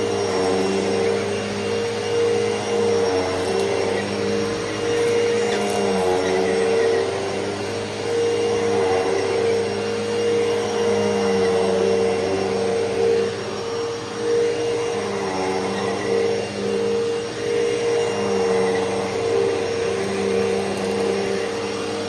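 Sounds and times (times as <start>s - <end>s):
vacuum cleaner running: 0.0s - 22.0s.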